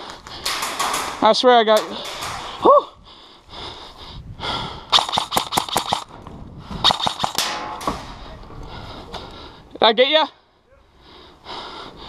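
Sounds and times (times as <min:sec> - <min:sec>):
airsoft gun shots: 0:00.4 - 0:02.7, 0:04.9 - 0:06.1, 0:06.8 - 0:08.2.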